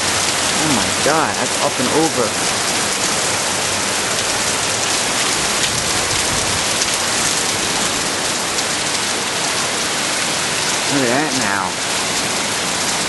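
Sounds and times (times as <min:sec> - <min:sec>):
heavy rain pouring: 0:00.0 - 0:13.0.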